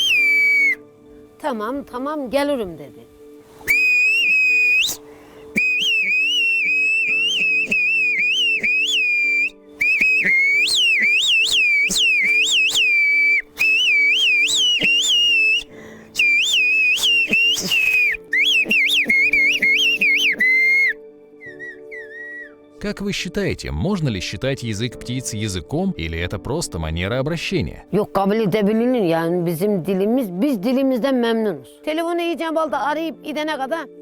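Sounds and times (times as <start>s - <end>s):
person whistling phrases: 0.0s - 0.8s, 3.7s - 5.0s, 5.6s - 22.6s.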